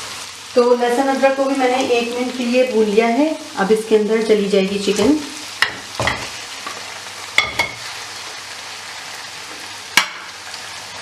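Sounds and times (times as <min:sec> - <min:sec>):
chicken sizzling in hot fat: 0:00.0 - 0:11.0
spoon clinking metal pan: 0:07.4 - 0:07.8.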